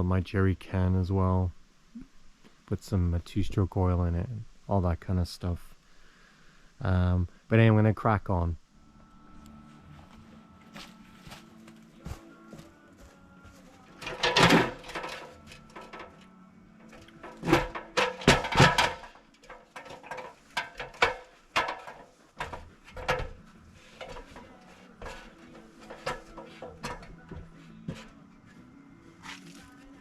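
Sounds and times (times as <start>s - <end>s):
tools knocking and clattering: 14.0s - 16.2s, 16.9s - 28.2s.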